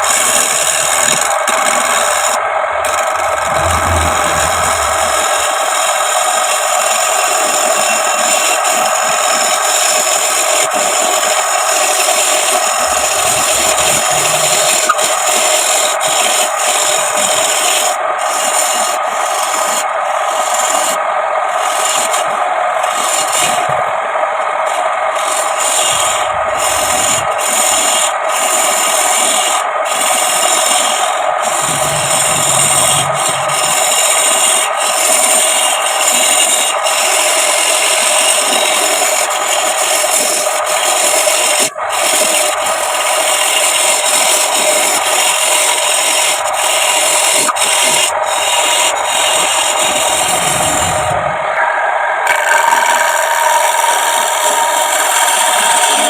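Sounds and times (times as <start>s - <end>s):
wood scraping on a lathe: 0.0s - 56.0s.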